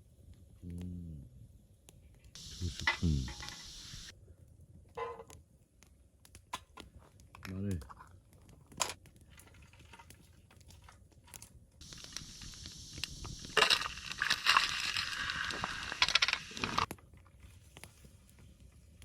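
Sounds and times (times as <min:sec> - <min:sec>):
garlic sizzling and crackling: 0:02.4 - 0:04.1, 0:11.8 - 0:16.9.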